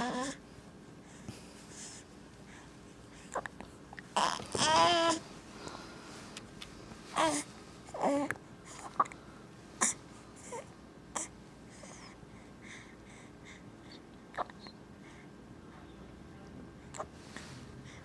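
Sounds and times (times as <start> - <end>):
baby whimpering cries: 0.0 - 0.4, 4.2 - 5.2, 7.2 - 8.3
baby hiccups: 14.4 - 14.6.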